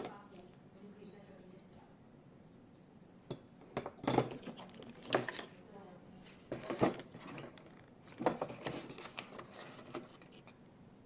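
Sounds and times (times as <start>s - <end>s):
hard objects clicking and rattling: 3.3s - 5.6s, 6.5s - 10.6s.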